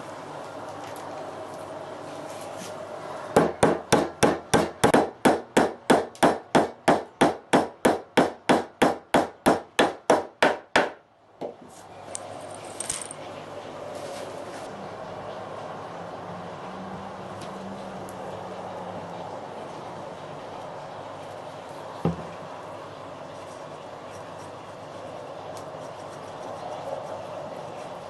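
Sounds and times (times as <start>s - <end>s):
hammer striking wood: 3.4s - 11.6s.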